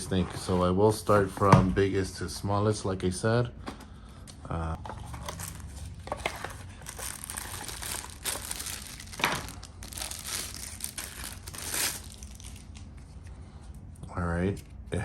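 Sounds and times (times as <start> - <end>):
packaging crinkling and rustling: 4.8 - 12.9.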